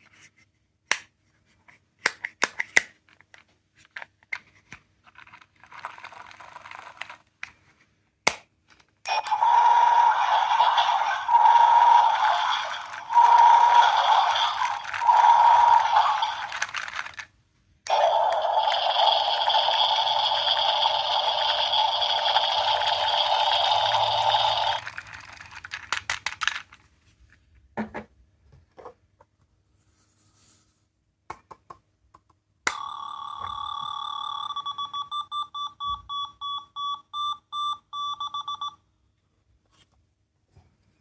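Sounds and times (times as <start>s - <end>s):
plastic toys clicking: 5.2s - 7.3s, 9.1s - 17.3s, 17.9s - 26.8s
harsh buzzing alarm tone: 9.1s - 16.7s, 17.9s - 24.8s
electronic beeping: 17.9s - 24.8s.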